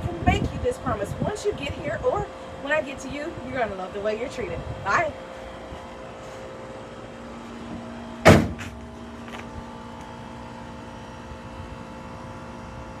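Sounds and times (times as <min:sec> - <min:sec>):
steady hum: 0:00.0 - 0:13.0
loud thump: 0:08.2 - 0:08.9.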